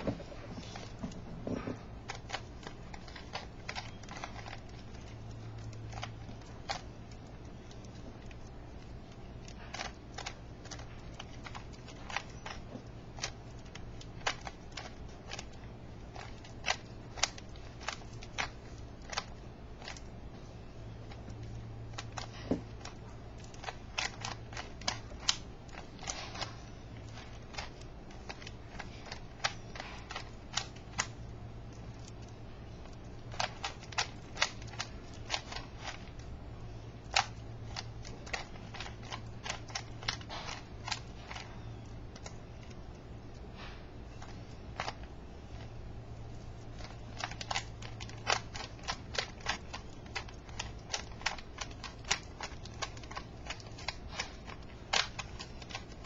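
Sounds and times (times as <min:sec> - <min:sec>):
puzzle cube layers clicking: 0:37.1 - 0:41.4, 0:46.6 - 0:56.0.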